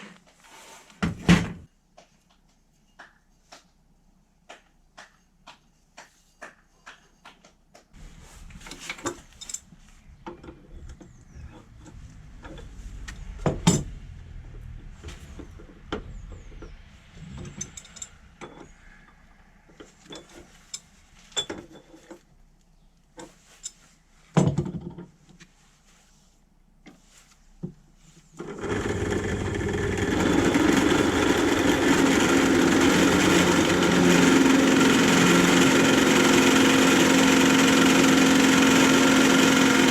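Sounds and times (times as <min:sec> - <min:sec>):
low rumble: 0:08.0 - 0:19.6
power tool motor running: 0:28.5 - 0:39.9.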